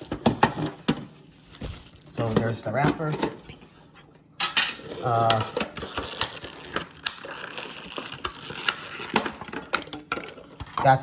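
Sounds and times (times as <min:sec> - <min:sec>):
foil wrapper crinkling: 0:05.0 - 0:10.5.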